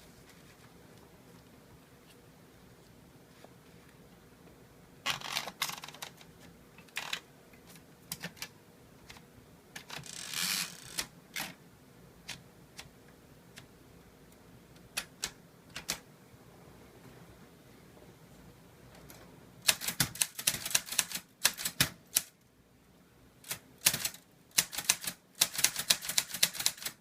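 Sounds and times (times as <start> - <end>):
typewriter keys striking: 19.6 - 22.3, 23.5 - 27.0.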